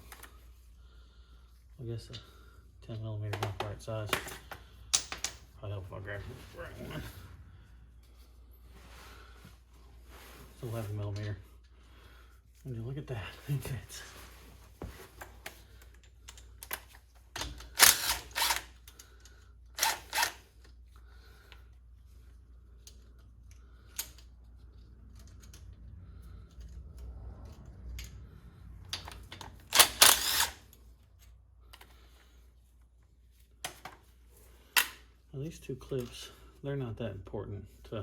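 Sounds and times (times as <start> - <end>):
steady low hum: 0.0 - 16.8
metal bolts clinking: 4.2 - 5.5.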